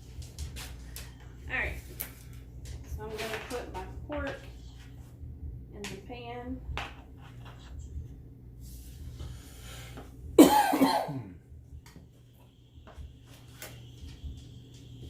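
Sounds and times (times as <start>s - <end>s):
person coughing: 10.4s - 11.4s.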